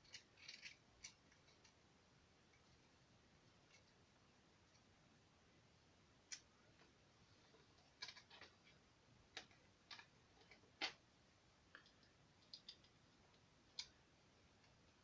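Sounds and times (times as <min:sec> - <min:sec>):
small metal screws clicking: 0:00.0 - 0:01.8.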